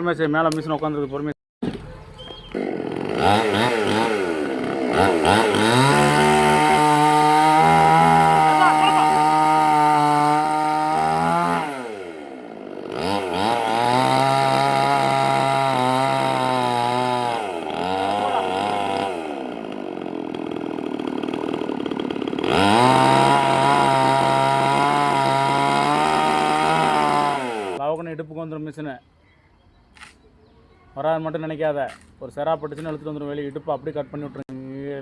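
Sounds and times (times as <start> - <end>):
chainsaw engine revving and idling: 2.5 - 27.8.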